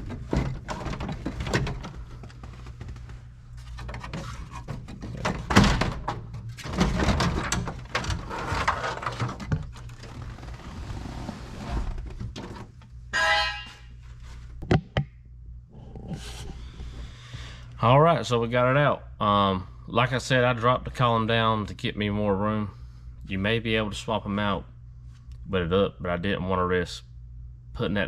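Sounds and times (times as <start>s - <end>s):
plastic scraping and rattling: 0.0s - 3.0s, 3.6s - 12.8s
plastic knocks and thunks: 14.6s - 15.1s.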